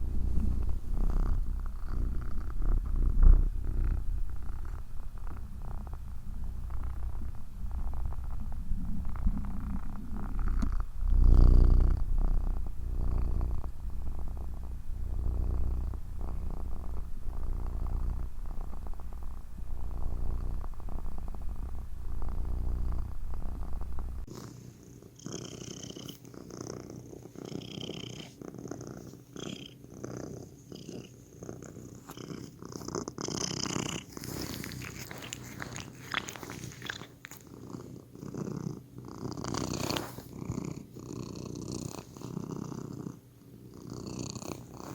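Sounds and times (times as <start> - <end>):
cat purring: 0.0 - 44.9
soft clicks and crackles: 0.4 - 11.1, 34.2 - 37.5.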